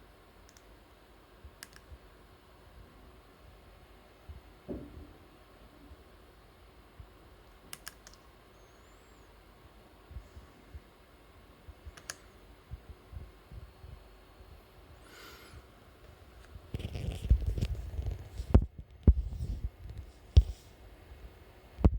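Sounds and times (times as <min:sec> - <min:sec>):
muffled rumbling through walls: 0:02.6 - 0:07.2, 0:15.6 - 0:21.9.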